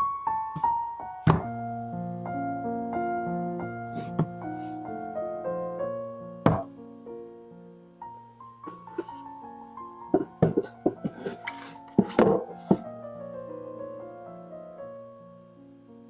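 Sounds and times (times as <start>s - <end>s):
piano music: 0.0s - 16.0s
sharp knock: 1.3s - 1.6s, 6.5s - 6.7s.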